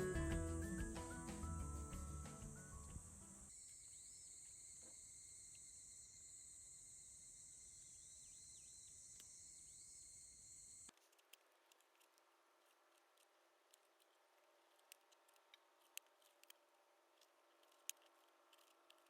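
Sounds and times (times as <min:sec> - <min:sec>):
music: 0:00.0 - 0:03.5
high-pitched insect chirring: 0:00.0 - 0:10.9.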